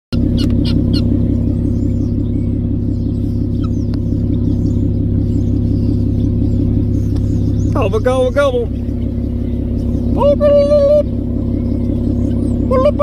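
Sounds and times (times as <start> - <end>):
vehicle engine idling: 0.1 - 13.0
faint high chirps: 11.0 - 12.7.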